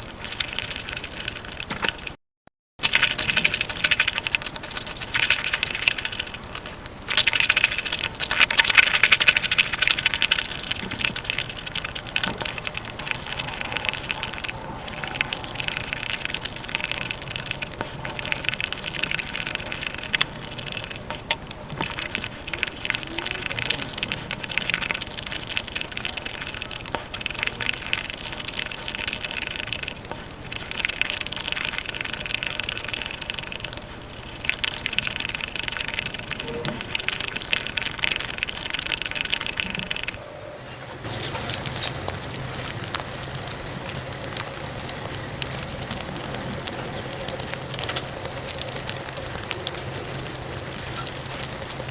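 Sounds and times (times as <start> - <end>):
sped-up chewing crackle: 0.0 - 2.2, 2.8 - 51.9.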